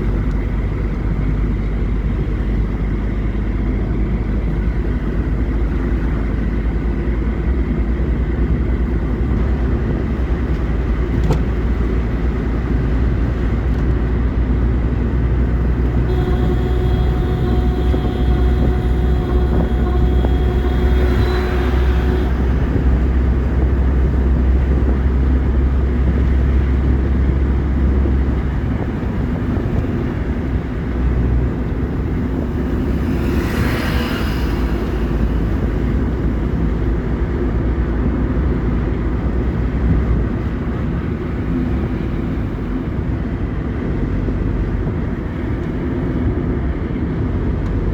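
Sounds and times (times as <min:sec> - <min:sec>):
car engine and tyre rumble: 0:00.0 - 0:47.9
steady tones: 0:15.5 - 0:24.5
rushing noise: 0:15.5 - 0:25.8, 0:29.2 - 0:37.7.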